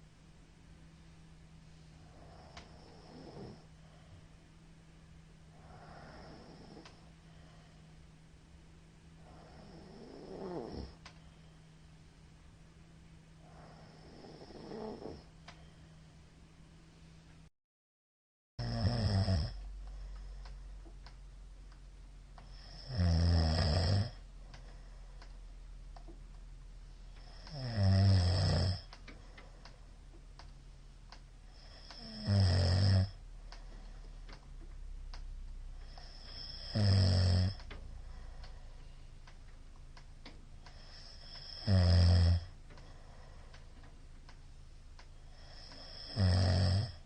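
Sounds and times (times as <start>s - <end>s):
man snoring loudly: 2.3s - 3.6s, 9.2s - 11.0s, 13.5s - 15.2s, 18.6s - 19.6s, 22.5s - 24.2s, 27.3s - 28.9s, 31.6s - 33.2s, 35.9s - 37.6s, 40.8s - 42.5s, 45.3s - 47.0s.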